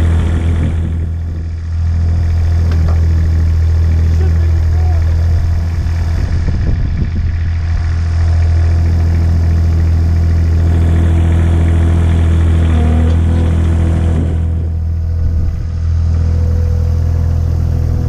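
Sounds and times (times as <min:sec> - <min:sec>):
ride-on mower engine droning: 0:00.0 - 0:18.0.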